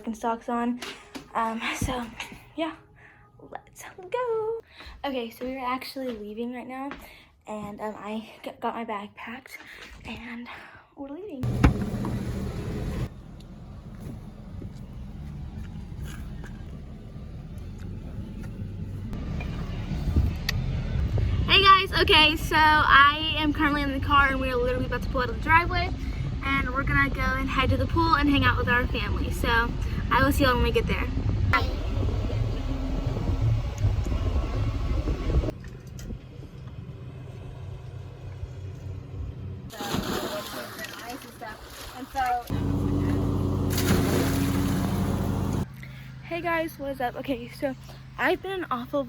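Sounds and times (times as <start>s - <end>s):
car engine idling: 11.4s - 21.2s, 42.5s - 43.8s, 44.4s - 45.6s
car engine rumble from cabin: 11.4s - 39.7s, 42.5s - 45.7s.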